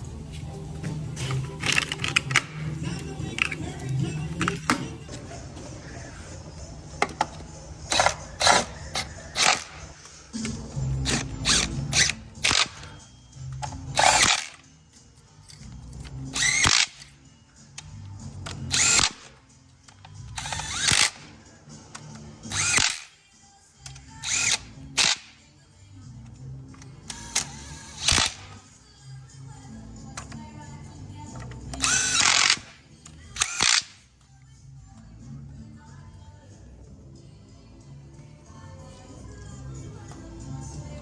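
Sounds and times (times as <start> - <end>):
cordless power driver bursts: 16.4 - 17.0, 18.6 - 19.3, 20.3 - 21.3, 22.5 - 23.1, 27.1 - 28.5, 31.8 - 32.8, 33.4 - 34.0.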